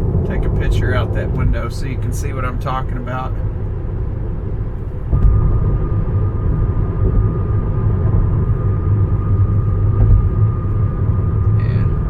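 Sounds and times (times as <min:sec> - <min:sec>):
road and wind noise in car: 0:00.0 - 0:12.0.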